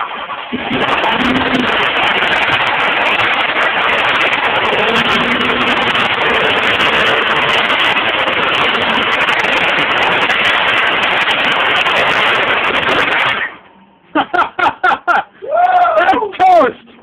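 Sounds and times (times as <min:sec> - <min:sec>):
engine with knocking rod revving: 0:00.5 - 0:12.9.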